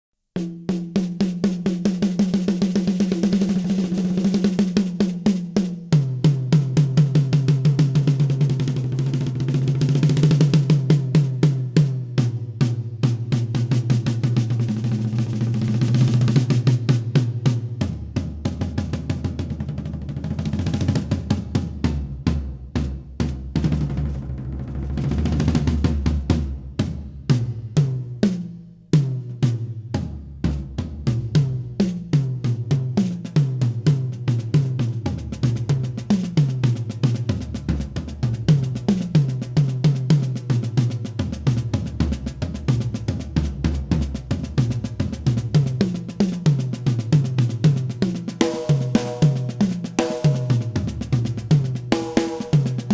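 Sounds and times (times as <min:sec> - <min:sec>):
drum toms struck: 0:40.4 - 0:52.9.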